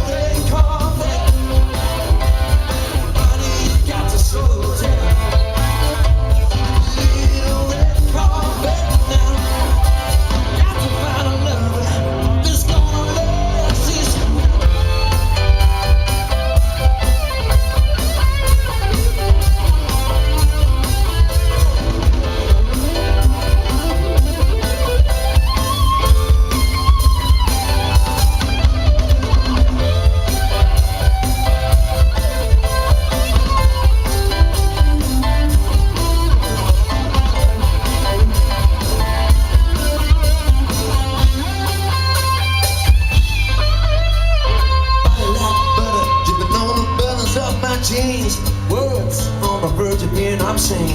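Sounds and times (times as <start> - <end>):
live rock band playing: 0.0 - 50.9.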